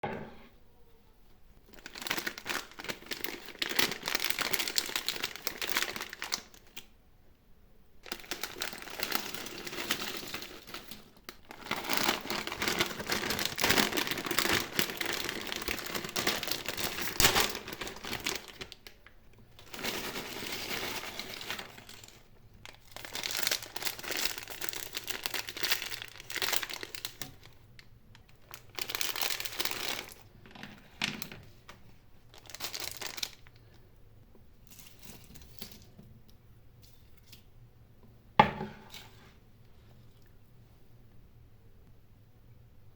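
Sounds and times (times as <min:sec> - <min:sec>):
snack wrappers crinkling and tearing: 0:01.7 - 0:06.9, 0:08.0 - 0:31.4, 0:32.2 - 0:33.8.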